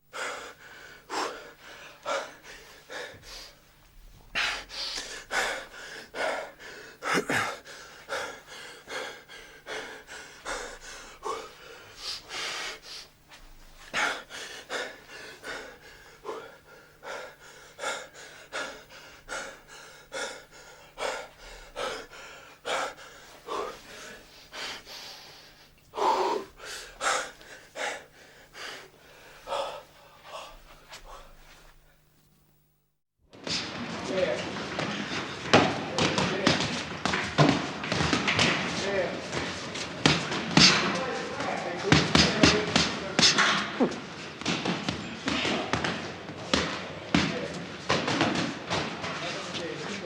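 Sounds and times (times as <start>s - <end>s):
person breathing heavily: 0.0s - 32.1s.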